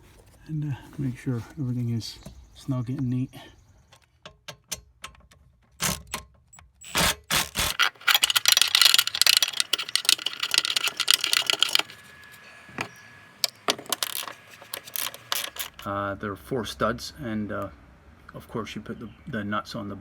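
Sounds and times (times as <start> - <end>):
clicking and rattling of car parts: 3.8 - 12.0, 12.8 - 15.9.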